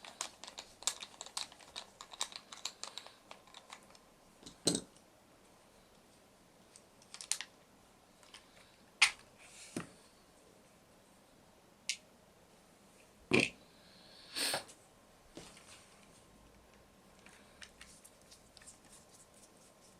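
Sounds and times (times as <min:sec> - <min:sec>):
plastic and metal parts clicking: 0:00.0 - 0:04.0.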